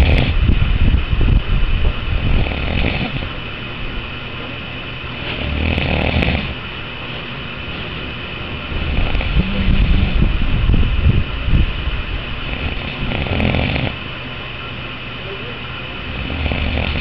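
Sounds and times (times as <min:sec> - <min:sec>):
man snoring: 0:00.0 - 0:00.4, 0:02.3 - 0:03.2, 0:05.4 - 0:06.6, 0:08.8 - 0:10.4, 0:12.4 - 0:14.0, 0:16.2 - 0:17.0
steady background hiss: 0:00.0 - 0:17.0.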